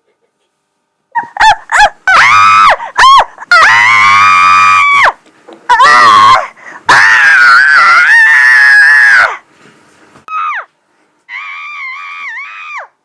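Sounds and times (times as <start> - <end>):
cartoon character screaming: 1.2 - 5.1, 5.7 - 9.4, 10.3 - 10.7, 11.3 - 13.0.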